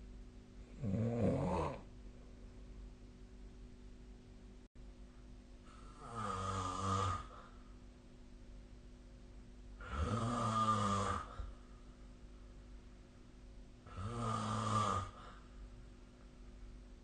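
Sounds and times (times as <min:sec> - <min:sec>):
person snoring: 0:00.7 - 0:01.9, 0:05.7 - 0:07.6, 0:09.8 - 0:11.6, 0:13.8 - 0:15.4.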